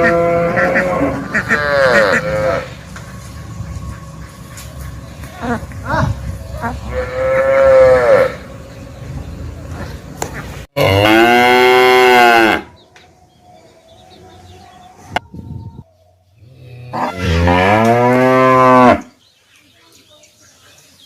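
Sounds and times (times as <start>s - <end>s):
cow mooing: 0.0s - 2.8s, 6.6s - 8.6s, 10.8s - 12.7s, 16.6s - 19.1s.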